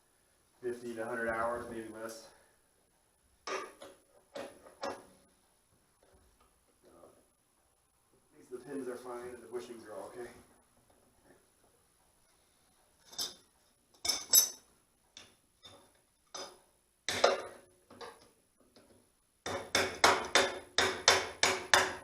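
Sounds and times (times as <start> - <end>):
metal tools clanking on metal: 13.0 - 13.4, 14.0 - 14.7.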